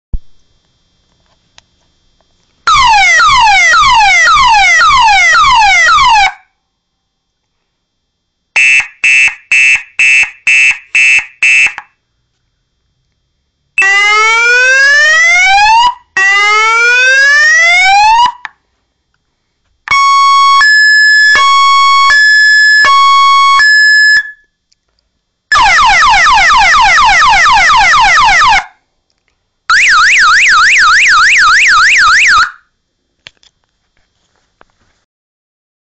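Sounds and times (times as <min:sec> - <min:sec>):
electronic vehicle siren: 0:02.7 - 0:06.5, 0:08.6 - 0:11.9, 0:13.8 - 0:18.5, 0:19.9 - 0:24.5, 0:25.5 - 0:28.7, 0:29.7 - 0:32.7.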